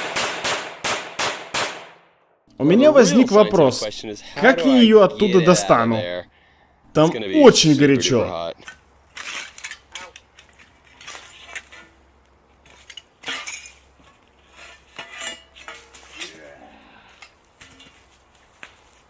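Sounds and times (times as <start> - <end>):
metal clanking and scraping: 8.6 - 12.0, 12.6 - 16.6.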